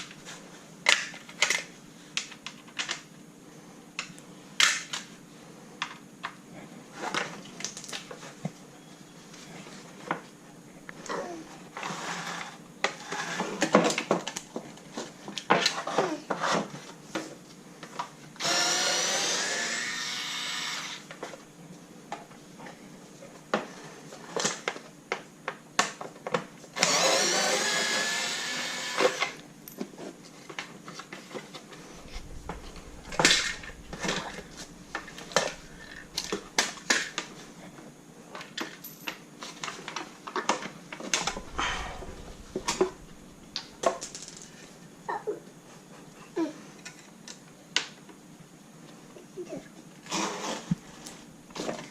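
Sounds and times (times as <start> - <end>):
electric screwdriver running: 18.4 - 21.0.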